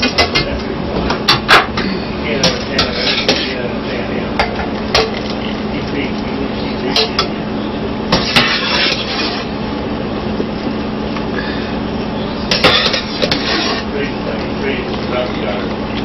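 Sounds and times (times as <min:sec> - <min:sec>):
steady low hum: 0:00.0 - 0:16.0
utensil clinking against pot: 0:02.4 - 0:03.6, 0:04.4 - 0:05.4, 0:06.8 - 0:07.4, 0:12.5 - 0:13.9.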